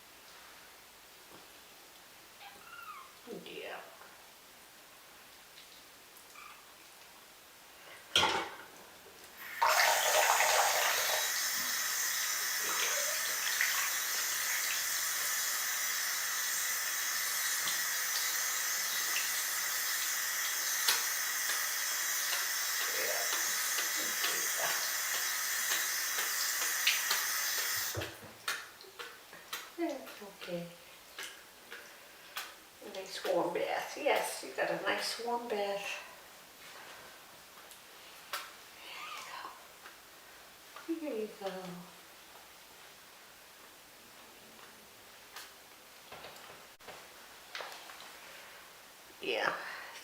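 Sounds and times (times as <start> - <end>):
tap water running into sink: 9.4 - 29.1.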